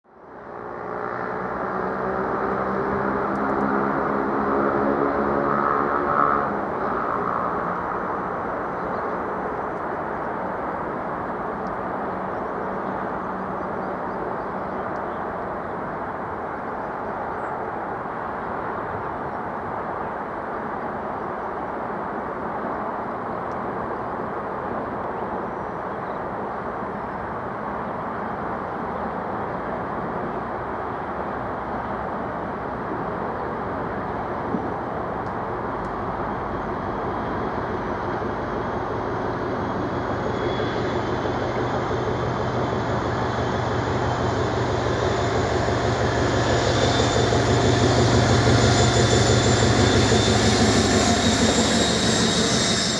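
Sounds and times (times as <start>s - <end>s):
diesel locomotive engine rumbling: 0.2s - 19.2s, 29.1s - 52.9s
high turbocharger whine: 38.5s - 52.9s.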